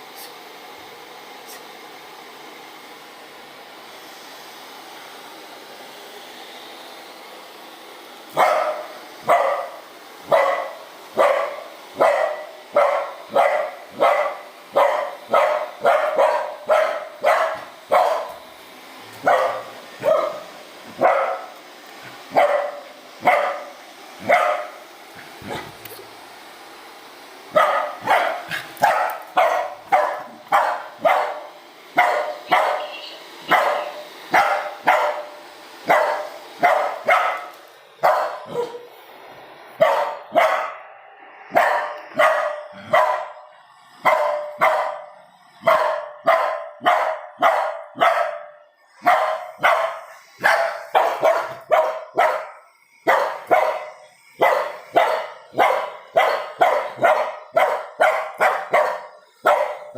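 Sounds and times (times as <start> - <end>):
dog barking: 8.3 - 18.4, 19.1 - 21.6, 22.3 - 24.8, 27.5 - 38.9, 39.8 - 40.9, 41.5 - 59.9.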